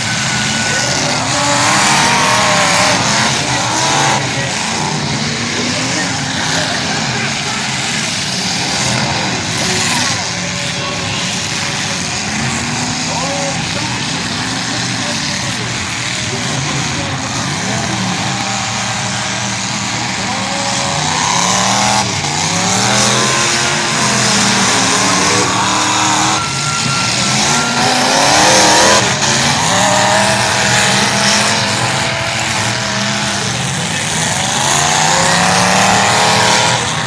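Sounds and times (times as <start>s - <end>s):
car engines revving: 0.0s - 37.0s
tyre squeal: 20.4s - 37.0s.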